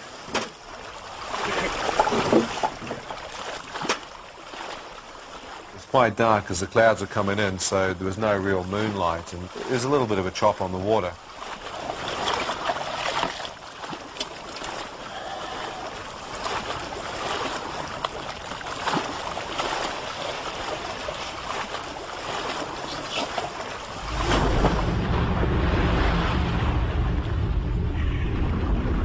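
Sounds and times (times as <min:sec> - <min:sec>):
choppy sea water splashing: 0:00.0 - 0:29.0
low rumble: 0:23.9 - 0:29.0.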